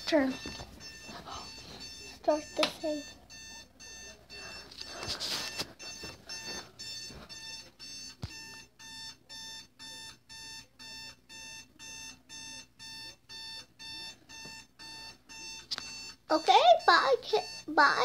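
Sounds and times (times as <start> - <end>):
fire alarm pulsing beep: 0.1 - 17.8.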